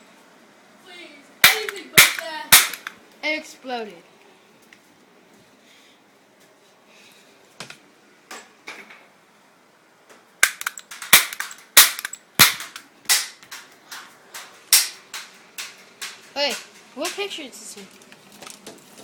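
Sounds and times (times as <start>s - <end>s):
cap gun clicks: 1.4s - 3.0s, 10.4s - 13.6s
cap gun popping: 1.4s - 3.0s, 10.4s - 13.6s, 14.7s - 16.2s.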